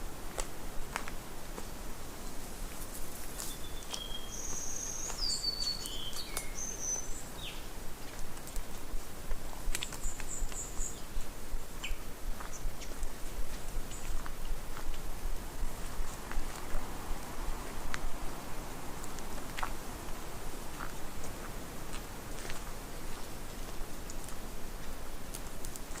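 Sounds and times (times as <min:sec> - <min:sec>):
steady hiss: 0:00.0 - 0:26.0
birds whistling: 0:03.4 - 0:07.6.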